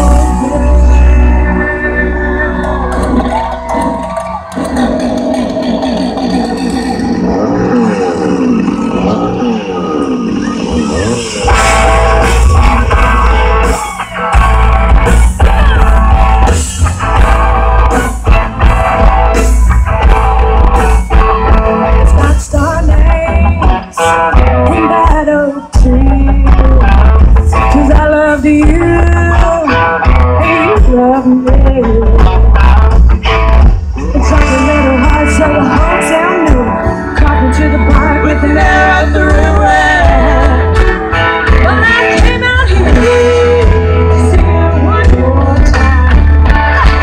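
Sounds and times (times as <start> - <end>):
heavy bass line: 0.0 - 25.2, 25.8 - 47.0
electric guitar: 0.0 - 47.0
live band playing country-rock: 0.0 - 47.0.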